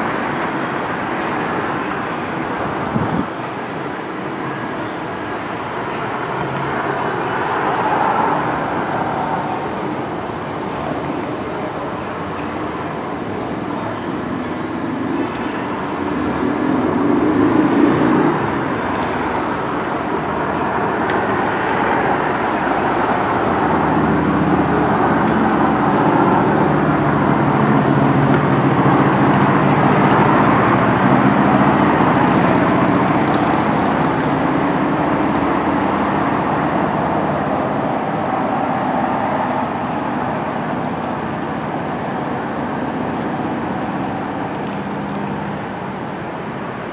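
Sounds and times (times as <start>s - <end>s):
traffic noise with engine drone: 0.0s - 46.9s.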